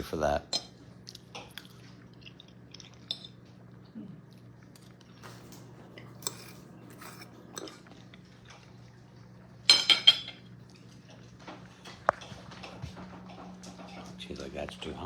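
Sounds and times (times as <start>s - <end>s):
steady low hum: 0.0s - 15.0s
dishes and cutlery clinking: 5.2s - 8.0s, 9.7s - 10.6s, 11.4s - 14.8s.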